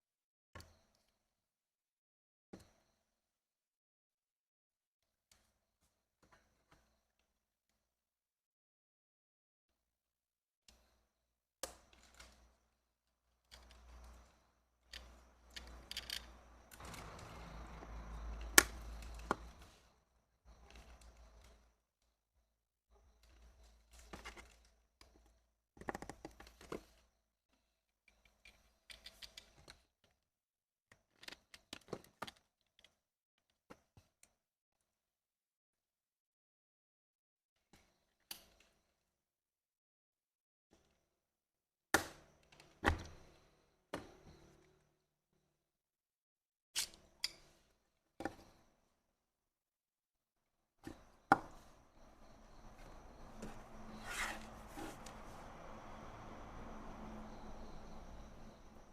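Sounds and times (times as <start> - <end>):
plastic parts clicking and knocking: 14.8 - 19.7, 23.2 - 27.0, 28.1 - 30.2, 30.9 - 34.2.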